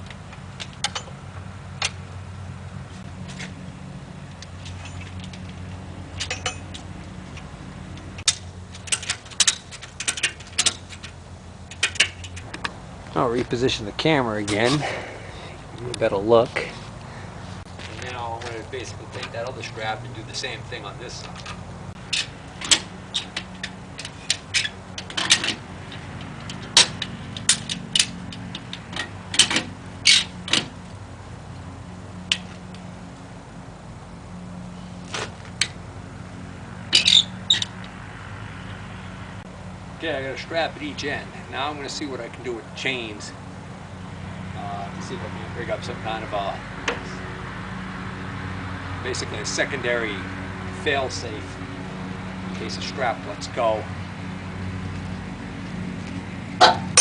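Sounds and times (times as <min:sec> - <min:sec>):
tractor engine idling: 0:00.0 - 0:57.0
metallic clinks and rattles: 0:04.6 - 0:07.4.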